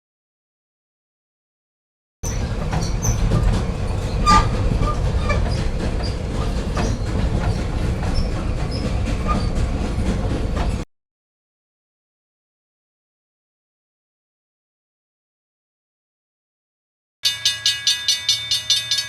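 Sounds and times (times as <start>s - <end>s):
high wheel squeals: 2.2s - 10.0s
train rumbling on rails: 2.2s - 10.9s.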